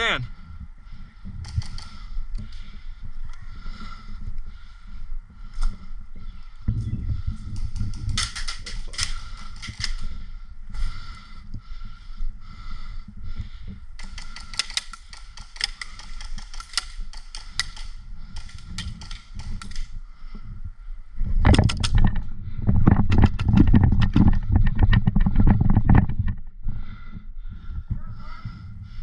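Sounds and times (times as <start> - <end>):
airsoft guns snapping: 7.6 - 10.0, 14.0 - 19.9, 21.5 - 22.0.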